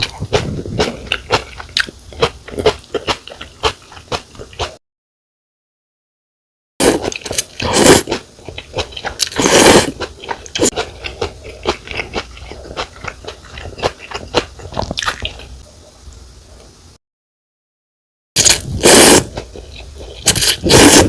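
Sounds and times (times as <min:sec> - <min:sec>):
wet chewing: 0:00.0 - 0:04.8, 0:06.9 - 0:15.6
noodle slurping: 0:06.8 - 0:15.4, 0:18.4 - 0:21.0.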